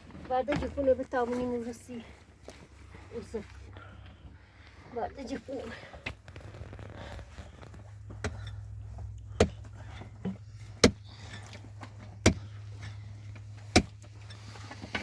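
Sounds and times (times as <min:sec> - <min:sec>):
steady low rumble: 0:00.8 - 0:15.0
sharp knocks: 0:10.8 - 0:11.0.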